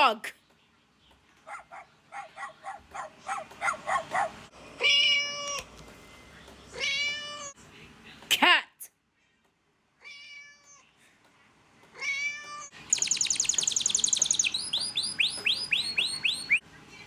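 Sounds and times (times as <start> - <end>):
cat meowing: 4.8 - 5.7, 6.7 - 7.6, 10.0 - 10.9, 12.0 - 12.8
small bird twittering and chirping: 12.7 - 17.0.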